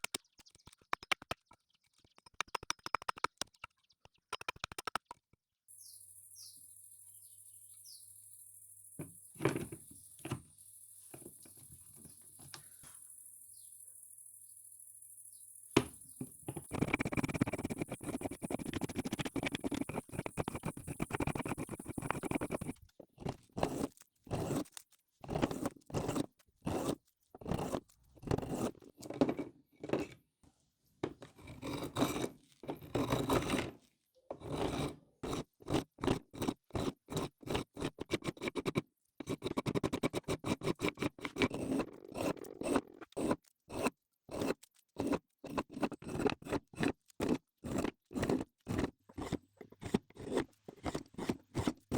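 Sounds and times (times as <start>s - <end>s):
faint bird chirps: 5.7s - 16.4s
hand scraping on a workpiece: 16.5s - 30.0s.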